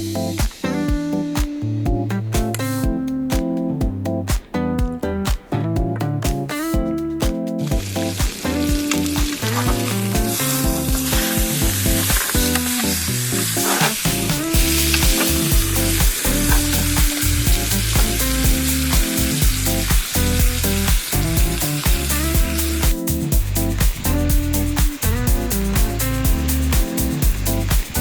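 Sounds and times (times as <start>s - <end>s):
music with walking bass line: 0.0s - 28.0s
food sizzling in a pan: 14.5s - 22.9s.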